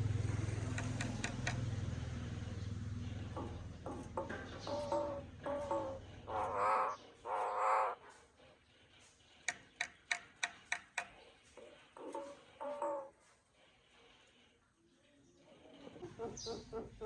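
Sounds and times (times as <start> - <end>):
bird sharp clicks: 0.7 - 1.6, 9.5 - 11.2
bird warbling notes: 4.6 - 8.0
bird harsh squawks: 4.7 - 8.0.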